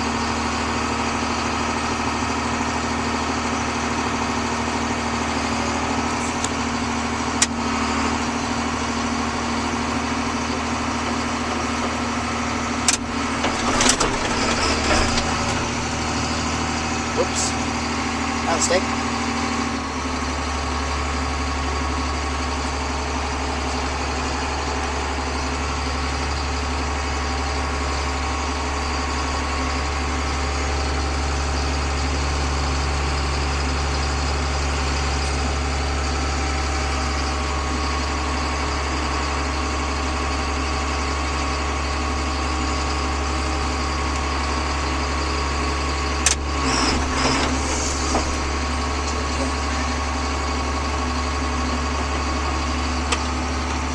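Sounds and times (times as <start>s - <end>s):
diesel engine droning: 0.0s - 53.9s.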